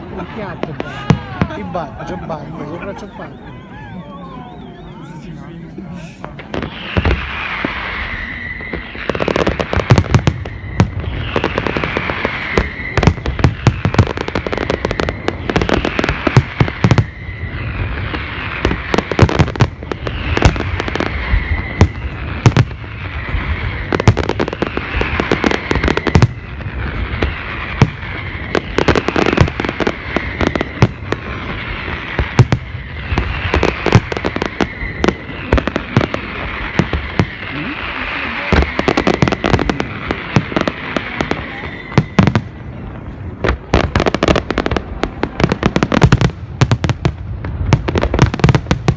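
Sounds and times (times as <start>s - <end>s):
fireworks bangs and crackling: 0.0s - 48.9s
falling whistling tone: 2.6s - 5.4s, 6.6s - 18.7s, 20.0s - 22.4s, 27.7s - 39.7s, 40.7s - 42.7s.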